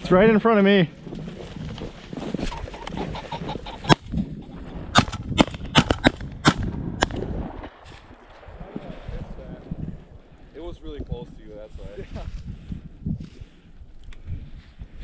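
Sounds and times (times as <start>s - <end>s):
pheasant cackling calls: 2.4s - 4.6s.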